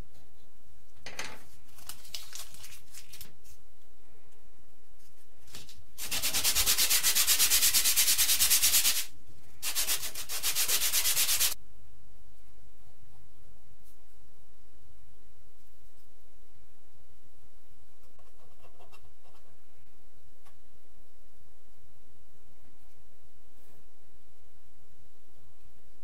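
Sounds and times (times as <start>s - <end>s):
sandpaper rubbing: 6.0s - 11.6s.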